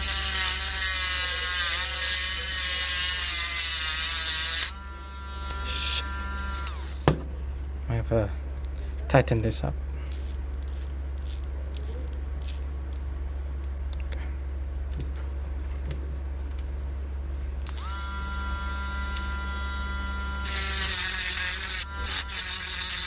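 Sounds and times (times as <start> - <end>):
rotary tool motor whine: 0.0 - 7.0, 17.7 - 23.0.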